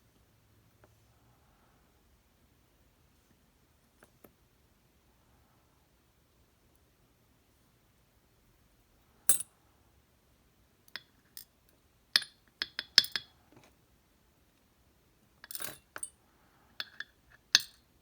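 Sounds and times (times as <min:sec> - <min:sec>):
small metal parts clinking: 0:15.4 - 0:16.1, 0:16.8 - 0:17.8.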